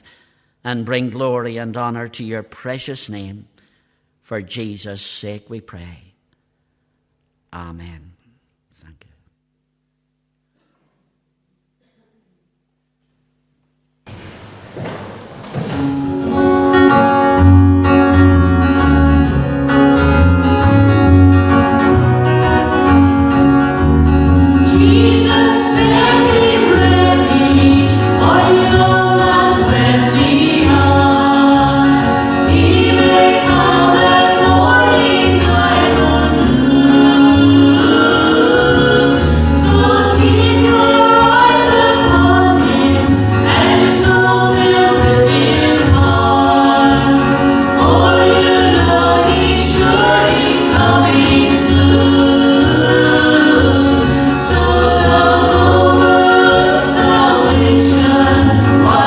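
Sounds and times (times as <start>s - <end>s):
strummed guitar: 14.1s - 59.0s
bass: 16.1s - 59.0s
group singing a hymn: 21.5s - 59.0s.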